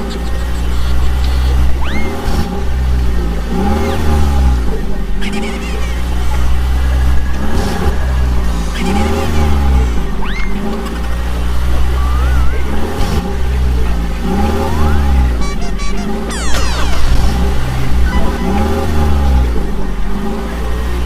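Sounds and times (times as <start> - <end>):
vehicle engine drone: 0.0 - 21.0
whistle-like glides: 11.9 - 13.0.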